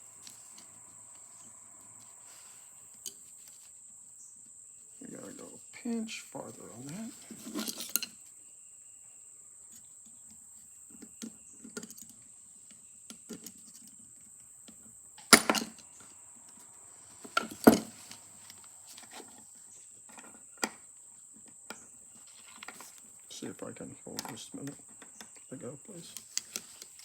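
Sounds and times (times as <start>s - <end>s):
metal parts clinking: 7.4s - 8.1s, 15.2s - 15.8s, 17.4s - 18.0s.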